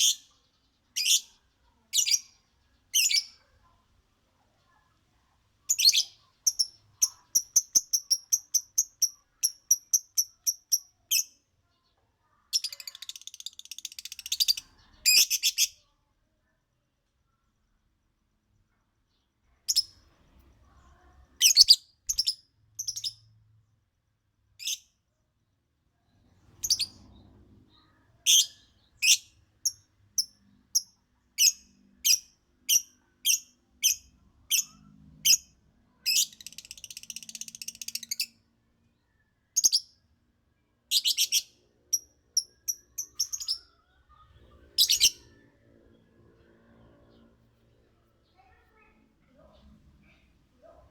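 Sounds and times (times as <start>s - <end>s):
bird chirping: 0.0s - 3.8s, 4.4s - 15.9s, 19.1s - 23.4s, 26.0s - 40.2s, 40.8s - 50.8s
buzzy chattering bird trill: 44.7s - 45.3s.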